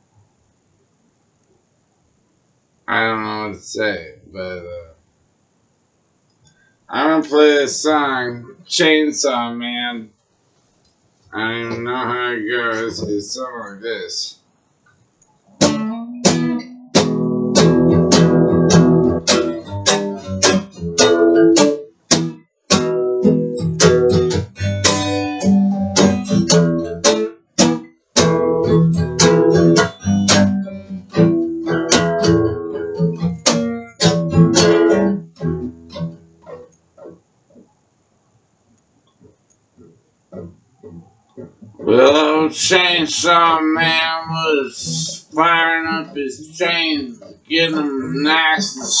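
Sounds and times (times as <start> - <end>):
guitar strumming chords: 11.4 - 14.2, 15.6 - 37.6, 39.8 - 49.0.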